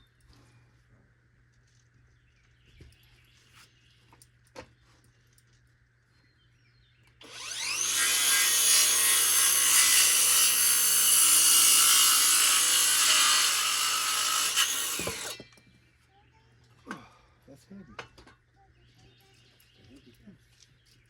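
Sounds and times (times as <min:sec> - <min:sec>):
power saw cutting wood: 0:07.2 - 0:15.5.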